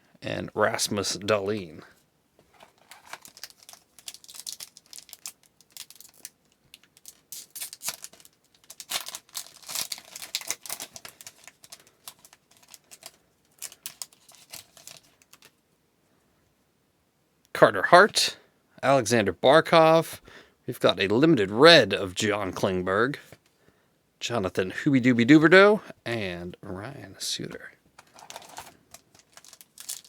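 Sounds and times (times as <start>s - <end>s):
cards rustling: 2.4s - 15.5s, 28.0s - 30.0s
foil wrapper tearing and crinkling: 2.6s - 15.5s, 28.0s - 30.0s.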